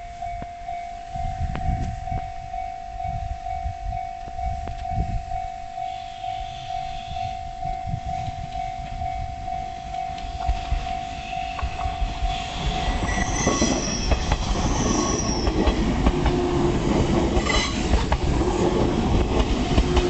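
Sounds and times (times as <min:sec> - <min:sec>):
level crossing warning bell: 0:00.0 - 0:14.1.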